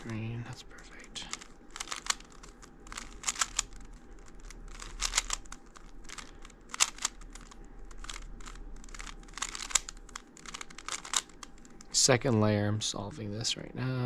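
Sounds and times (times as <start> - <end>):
puzzle cube plastic clicks: 0.9 - 12.0.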